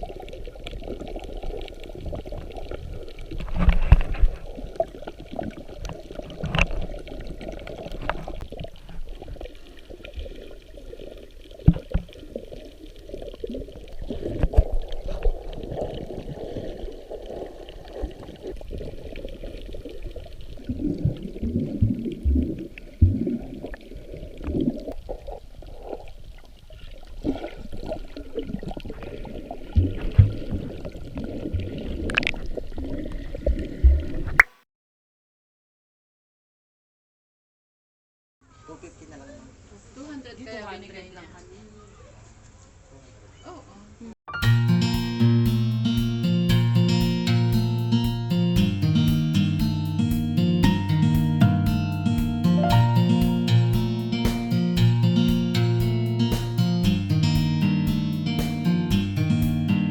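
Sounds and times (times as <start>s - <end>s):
muffled water sloshing: 0.0s - 34.5s.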